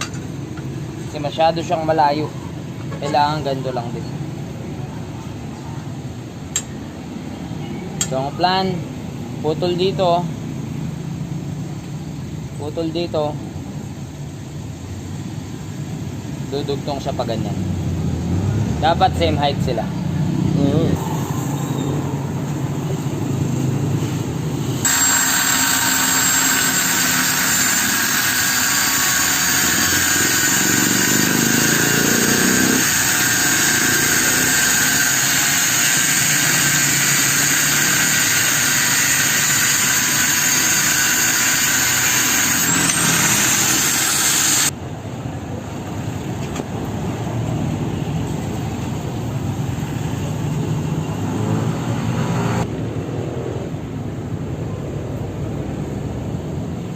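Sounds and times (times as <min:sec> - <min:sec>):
angle grinder cutting steel: 0:24.8 - 0:44.7.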